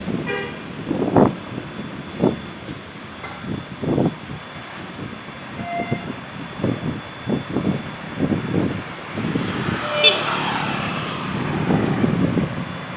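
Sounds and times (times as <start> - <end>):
coach bus passing: 2.0 - 5.5, 7.6 - 12.9
bus horn note: 9.0 - 11.5.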